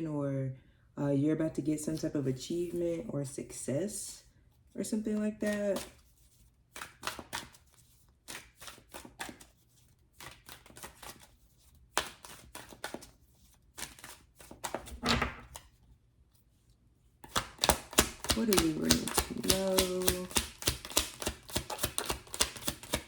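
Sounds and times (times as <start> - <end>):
cards being shuffled by hand: 5.1 - 15.8, 17.2 - 23.0.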